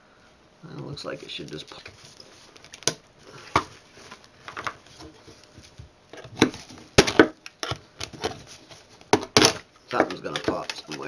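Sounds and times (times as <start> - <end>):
plastic case clicking and knocking: 9.1 - 11.0.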